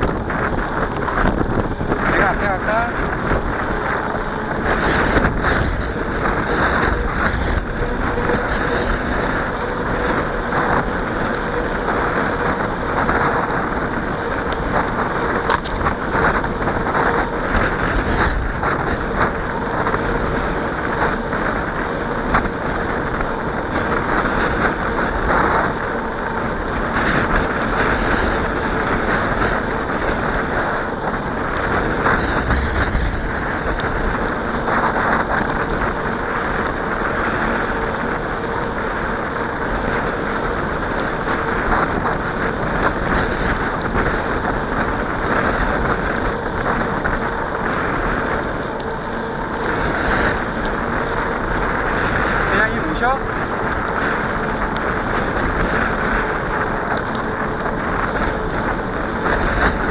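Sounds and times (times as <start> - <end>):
faint steady hum: 0.0 - 59.9
wind rushing over microphone: 0.0 - 59.9.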